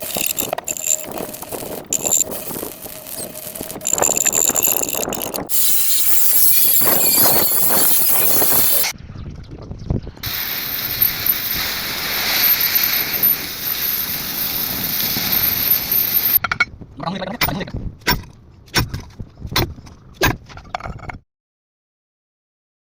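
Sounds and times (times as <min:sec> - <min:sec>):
welding arc hissing and crackling: 0:00.0 - 0:08.9, 0:10.2 - 0:16.4.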